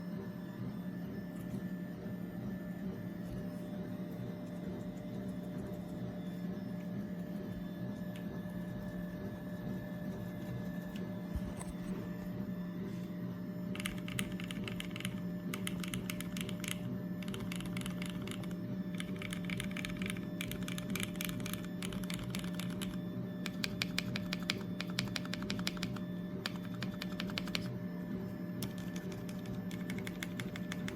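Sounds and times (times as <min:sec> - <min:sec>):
low electrical hum: 0:00.0 - 0:30.9
keyboard key clicks: 0:13.8 - 0:27.7.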